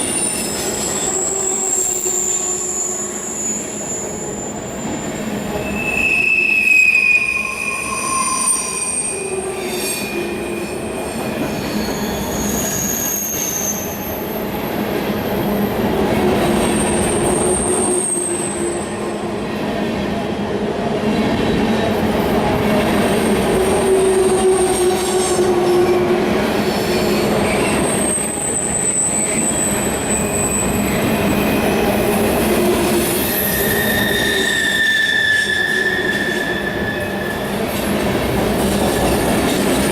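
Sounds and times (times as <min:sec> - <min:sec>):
high-pitched wheel squeals: 0:00.0 - 0:14.5, 0:16.6 - 0:19.0, 0:26.7 - 0:31.7, 0:32.8 - 0:37.6
train wheels rumbling on rail: 0:00.0 - 0:39.9.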